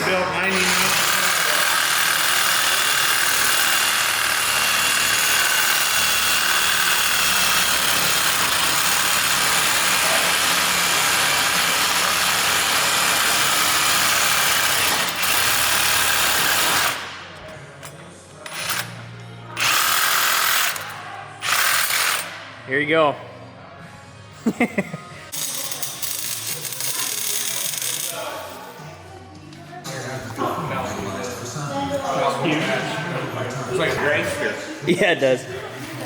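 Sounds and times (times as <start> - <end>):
angle grinder grinding steel: 0.0 - 17.0.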